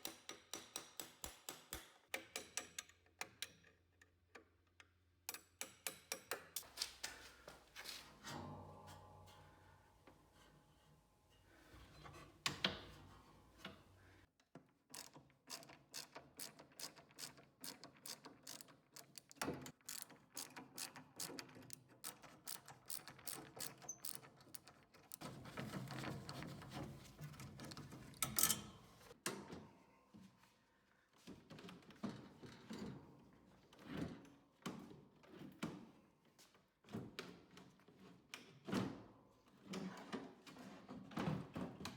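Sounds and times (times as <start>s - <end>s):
metal ratchet clicking: 15.0s - 25.2s.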